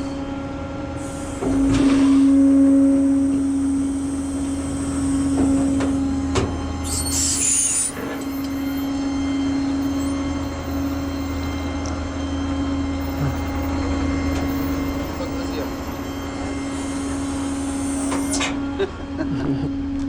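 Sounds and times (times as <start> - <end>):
truck engine running: 2.4 - 20.0.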